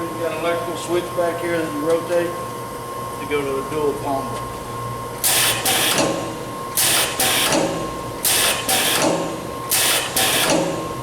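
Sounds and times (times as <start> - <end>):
pneumatic rivet machine cycling: 5.2 - 10.9.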